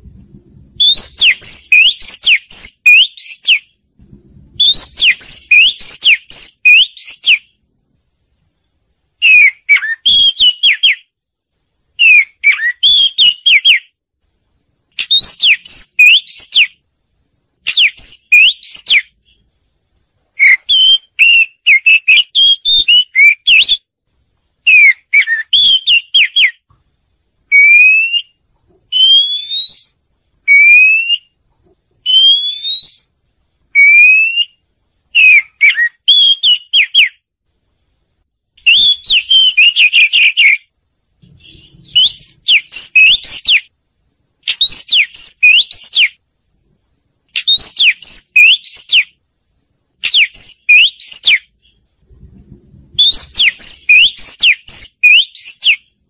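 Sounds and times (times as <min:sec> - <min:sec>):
bird singing whistled phrases: 0:00.8 - 0:03.7, 0:04.6 - 0:07.6, 0:09.2 - 0:11.1, 0:12.0 - 0:13.9, 0:15.0 - 0:16.8, 0:17.6 - 0:19.4, 0:20.4 - 0:23.9, 0:24.6 - 0:26.6, 0:27.5 - 0:31.4, 0:32.0 - 0:33.1, 0:33.8 - 0:34.6, 0:35.2 - 0:37.2, 0:38.6 - 0:43.7, 0:44.5 - 0:46.2, 0:47.4 - 0:49.2, 0:50.0 - 0:51.8, 0:53.0 - 0:55.9.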